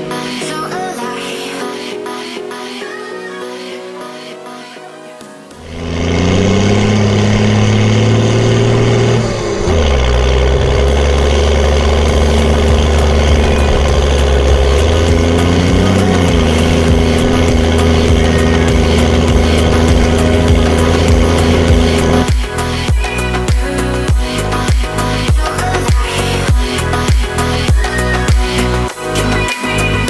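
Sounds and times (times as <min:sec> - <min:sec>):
tractor diesel engine: 0:05.7 - 0:30.0.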